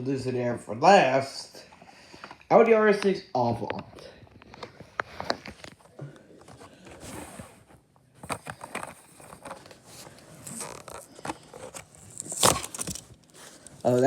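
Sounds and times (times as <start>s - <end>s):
plastic packaging clicking and crinkling: 8.2s - 14.0s.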